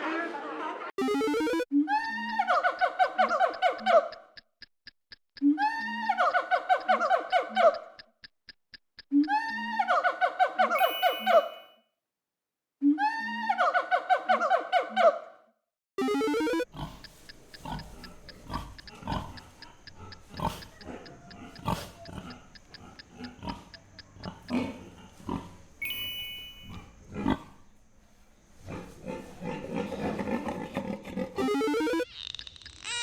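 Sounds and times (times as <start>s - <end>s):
animal calling: 16.7s - 27.4s.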